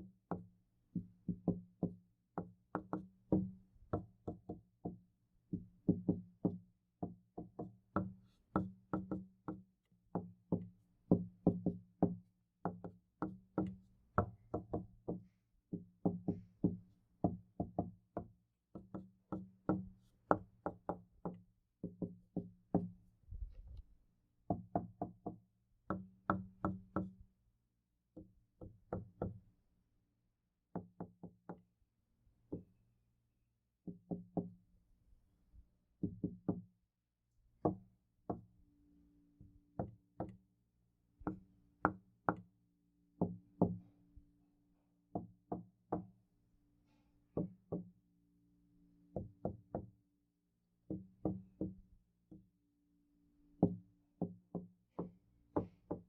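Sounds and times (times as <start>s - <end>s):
knocking on a door: 1.0s - 9.6s, 10.2s - 22.9s, 36.0s - 36.7s, 43.2s - 43.8s, 50.9s - 51.8s.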